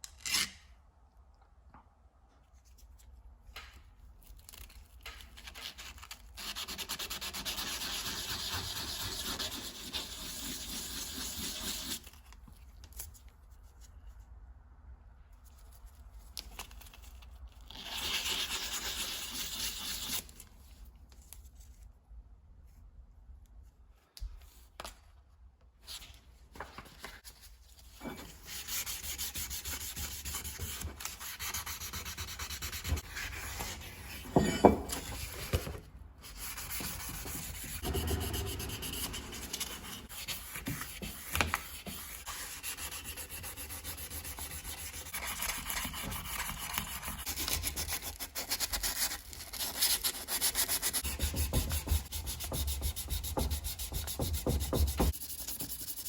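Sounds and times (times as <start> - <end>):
sandpaper rubbing: 28.5 - 34.2, 36.2 - 56.0.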